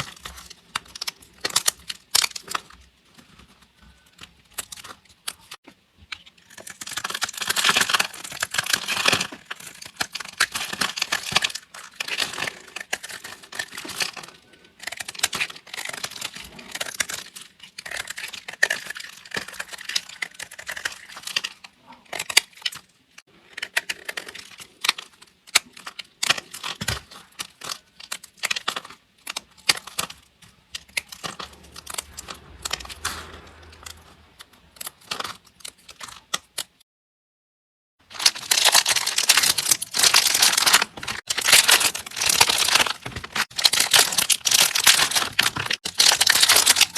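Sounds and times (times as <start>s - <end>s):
knife crunching through soap: 6.1s - 33.0s.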